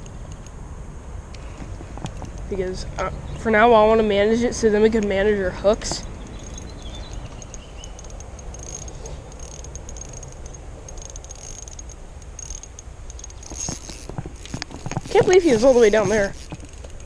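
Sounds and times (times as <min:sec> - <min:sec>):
low steady rumble: 0:00.0 - 0:17.0
fishing reel clicking: 0:06.2 - 0:17.0.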